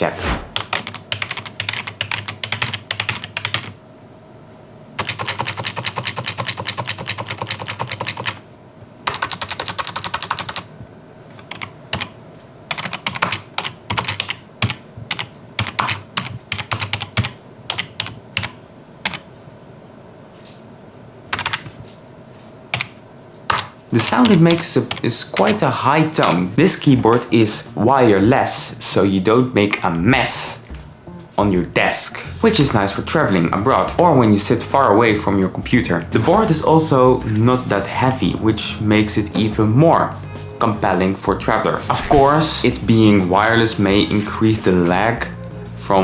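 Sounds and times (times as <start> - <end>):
keyboard typing: 9.1 - 10.6, 21.3 - 21.7.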